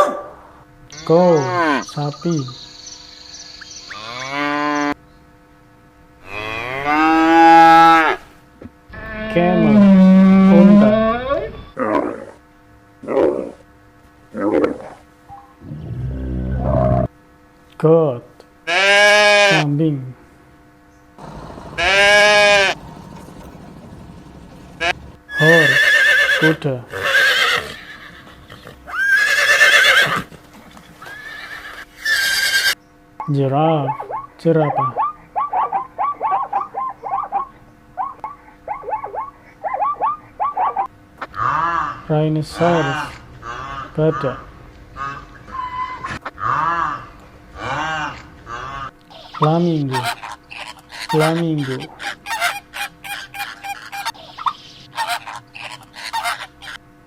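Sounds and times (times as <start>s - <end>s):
cow mooing: 21.2s - 25.2s
horse whinnying: 21.2s - 30.3s.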